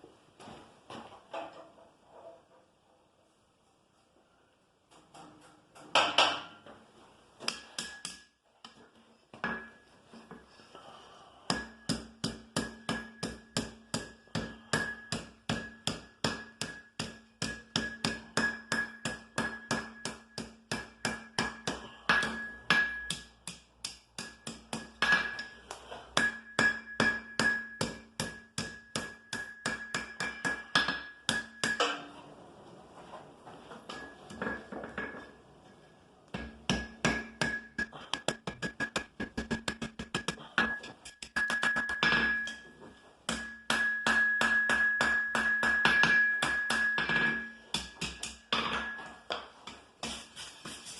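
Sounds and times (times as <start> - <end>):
hammer striking iron on anvil: 7.5 - 8.3, 11.5 - 25.6, 26.2 - 32.1, 36.3 - 42.7, 43.3 - 49.4.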